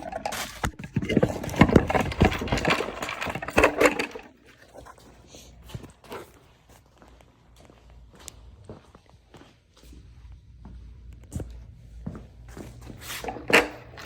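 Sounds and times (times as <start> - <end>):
plastic tubes knocking and clattering: 0.0 - 4.4, 13.2 - 14.0.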